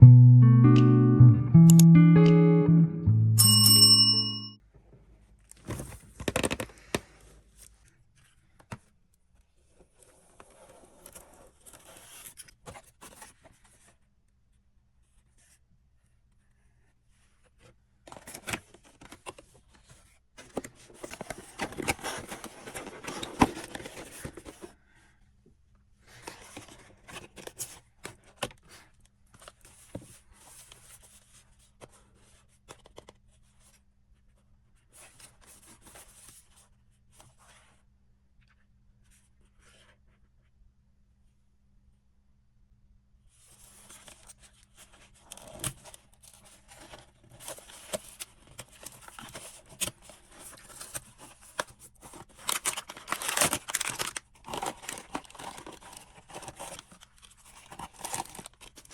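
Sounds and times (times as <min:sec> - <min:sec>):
plastic wrapping rustling and tearing: 0:52.1 - 0:58.9.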